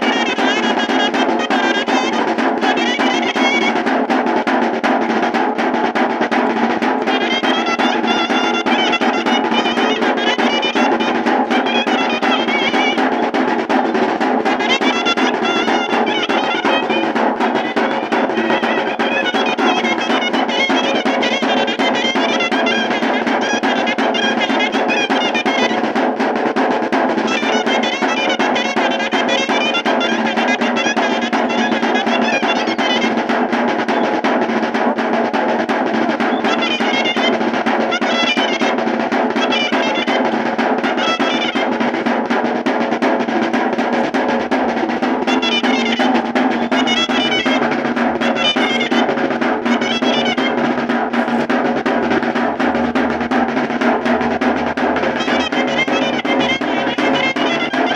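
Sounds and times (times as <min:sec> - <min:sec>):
shrill shawm melody: 0:00.0 - 0:03.9, 0:07.1 - 0:25.9, 0:27.2 - 0:34.1, 0:36.2 - 0:42.0, 0:44.7 - 0:57.9
drum rolls: 0:00.0 - 0:57.9.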